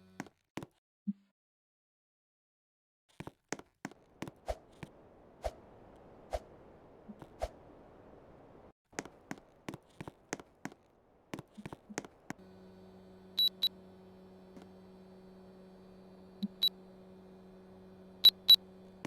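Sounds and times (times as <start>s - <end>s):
air conditioner humming: 10.9s - 19.0s
short high beeps: 13.4s - 13.8s.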